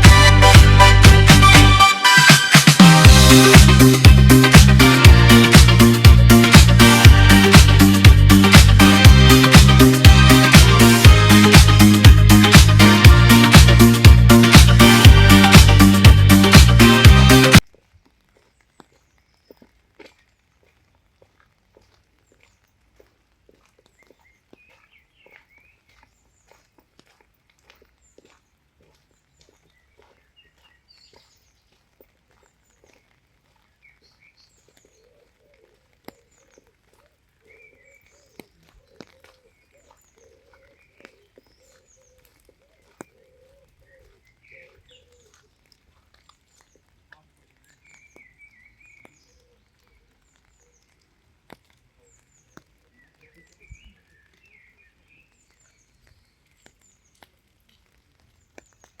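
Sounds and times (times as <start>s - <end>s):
birds chirping and twittering: 23.7s - 57.4s, 58.1s - 59.0s.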